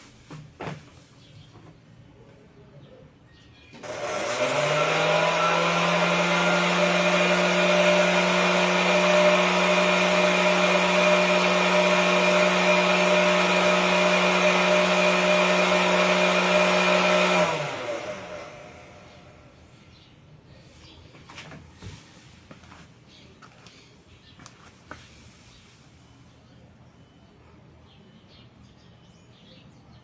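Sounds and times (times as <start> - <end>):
hair dryer motor humming: 3.8 - 19.4.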